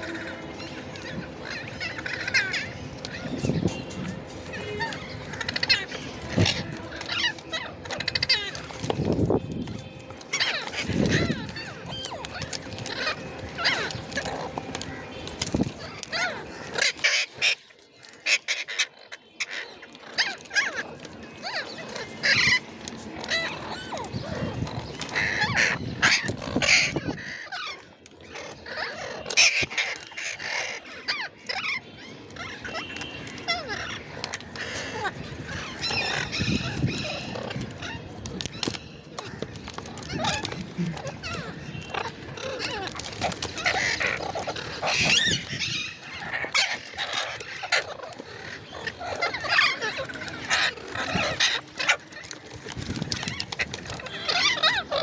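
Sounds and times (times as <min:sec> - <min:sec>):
parrot squawking and chirping: 0:00.1 - 0:09.1, 0:10.3 - 0:15.0, 0:15.7 - 0:55.0
parrot squawking and warbling: 0:39.9 - 0:52.4, 0:53.1 - 0:55.0.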